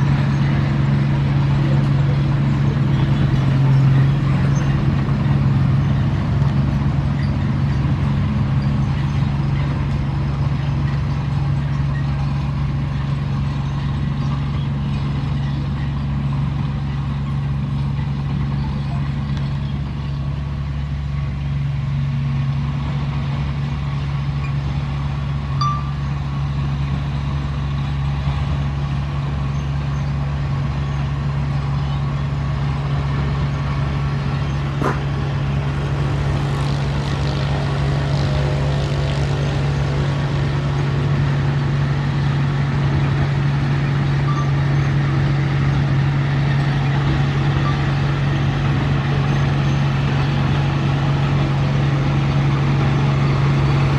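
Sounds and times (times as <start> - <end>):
bulldozer diesel engine droning: 0.0 - 53.9
brief high squeak: 44.3 - 44.6.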